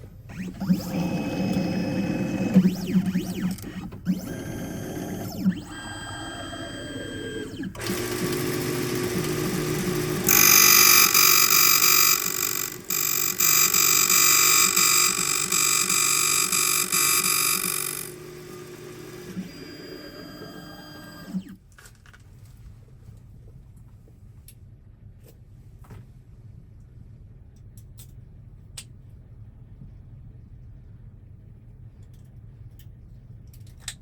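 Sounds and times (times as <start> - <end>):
key cutting machine motor humming: 0.3 - 21.6
high-pitched metal grinding: 7.1 - 21.4.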